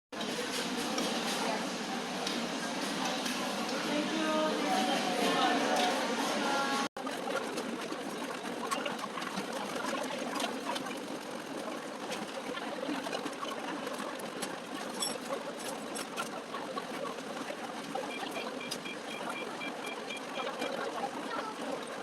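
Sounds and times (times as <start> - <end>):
murmur of voices: 0.2 - 6.9
quick high beeps: 18.1 - 20.5.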